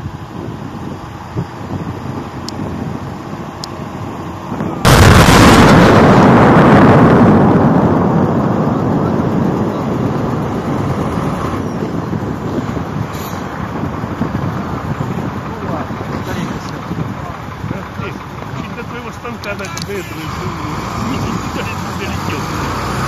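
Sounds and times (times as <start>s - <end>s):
rumbling: 1.7s - 22.6s
rock blast explosion: 4.8s - 7.9s.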